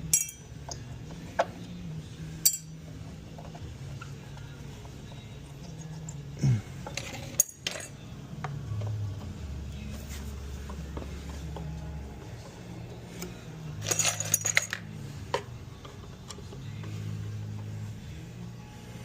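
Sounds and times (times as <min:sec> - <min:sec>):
small metal pieces clinking: 0:07.0 - 0:07.9, 0:13.8 - 0:14.8.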